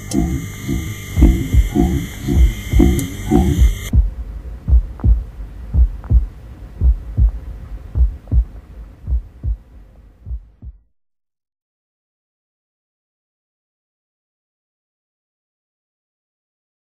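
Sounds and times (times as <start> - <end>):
low hum: 0.0 - 10.8
heartbeat thumps: 0.0 - 10.9.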